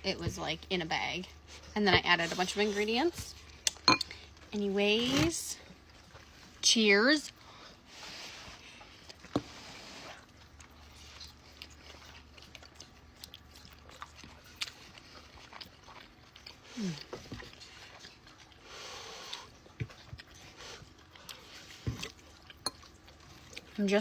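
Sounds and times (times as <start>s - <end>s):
chewing and biting: 5.2s - 6.6s, 8.5s - 24.0s.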